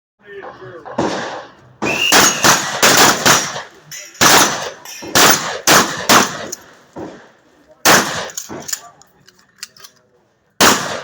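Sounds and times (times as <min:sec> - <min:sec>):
shotgun shots hitting steel plates: 0:00.8 - 0:08.9, 0:10.6 - 0:11.0.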